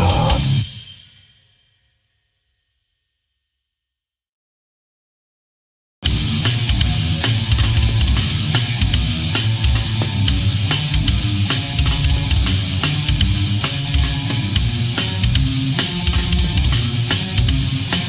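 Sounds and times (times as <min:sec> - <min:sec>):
fast drum kit: 0:00.0 - 0:00.7, 0:06.0 - 0:18.0
distorted electric guitars: 0:00.0 - 0:00.8, 0:06.0 - 0:18.0.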